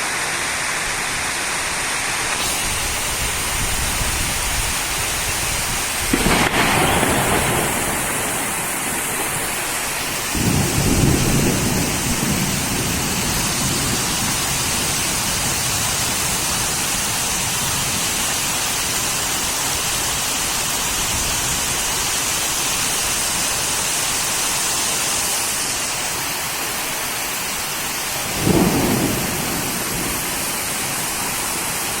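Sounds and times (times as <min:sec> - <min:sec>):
heavy rain: 0:00.0 - 0:32.0
low thunder rumbles: 0:02.8 - 0:18.2, 0:28.2 - 0:32.0.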